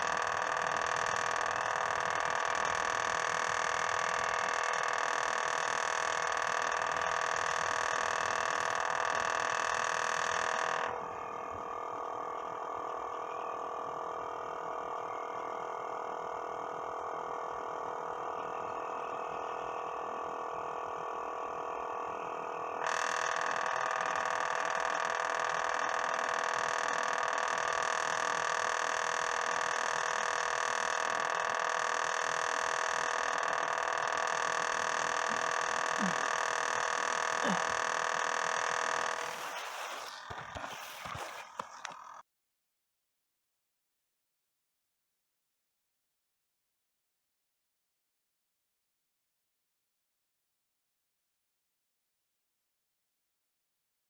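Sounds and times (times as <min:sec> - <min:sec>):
refrigerator buzzing hum: 0:00.0 - 0:42.2.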